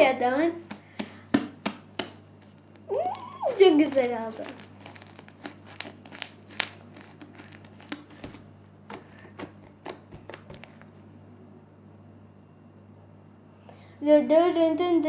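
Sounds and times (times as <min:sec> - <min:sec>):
slime clicking and popping: 0:02.8 - 0:10.8.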